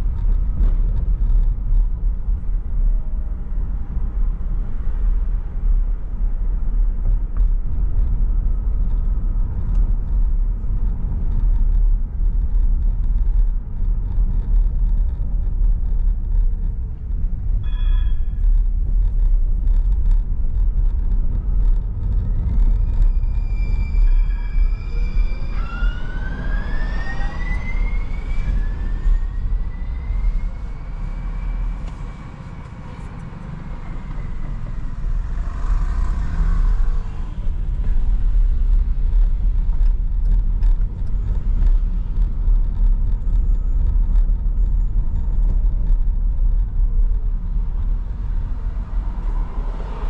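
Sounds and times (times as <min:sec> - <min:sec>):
car driving rumble: 0:00.0 - 0:50.0
brief high tone: 0:17.6 - 0:18.4.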